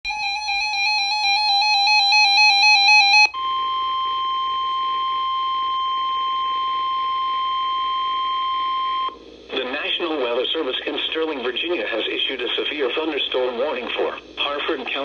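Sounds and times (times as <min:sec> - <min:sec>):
steady alarm tone: 0:00.1 - 0:09.2
radio static hiss: 0:09.1 - 0:15.0.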